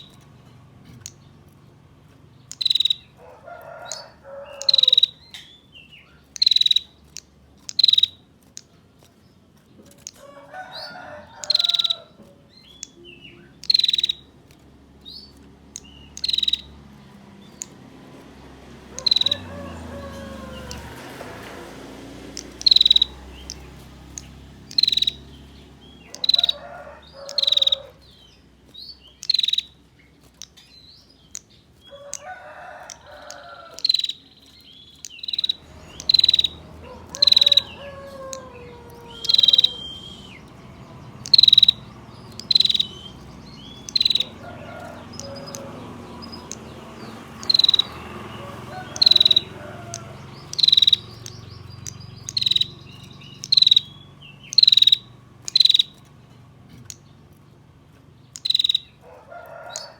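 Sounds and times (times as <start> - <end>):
bird giving sharp high calls: 2.5 - 3.2, 3.9 - 5.4, 6.3 - 7.0, 7.7 - 8.2, 11.4 - 12.1, 12.8 - 14.3, 15.8 - 16.7, 19.0 - 20.9, 22.4 - 28.0, 29.2 - 29.8, 35.0 - 40.6, 41.2 - 46.6, 47.4 - 56.0, 58.4 - 59.1.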